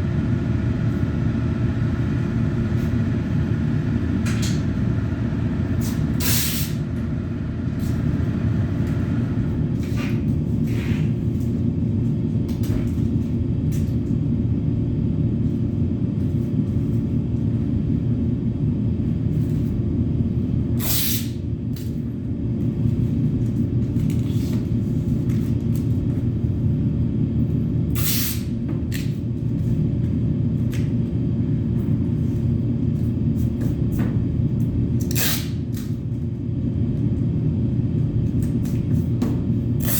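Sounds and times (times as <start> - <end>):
air compressor running: 0.0 - 11.7, 27.4 - 29.8, 34.9 - 36.2, 37.8 - 39.9
short hisses of released air: 6.2 - 6.8, 20.8 - 21.4, 28.0 - 28.4.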